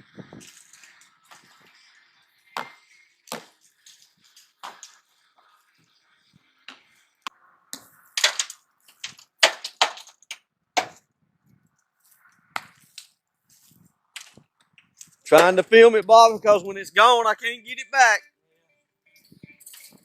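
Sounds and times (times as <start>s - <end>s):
sharp knocks and cracks: 2.6s - 4.0s, 7.7s - 11.0s.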